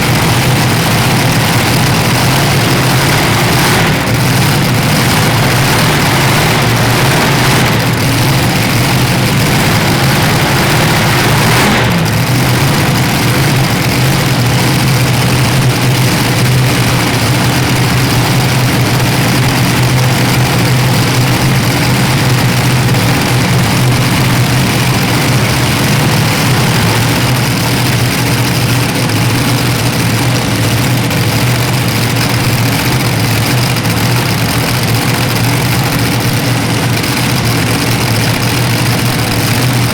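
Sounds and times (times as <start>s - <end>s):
heavy truck engine running: 0.0s - 39.9s.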